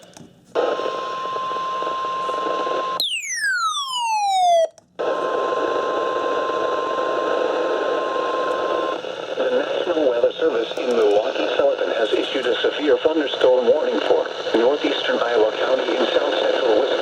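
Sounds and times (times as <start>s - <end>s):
falling pitch sweep: 3.0s - 4.7s
warning alarm beep: 3.0s - 4.7s
radio static: 8.6s - 17.0s.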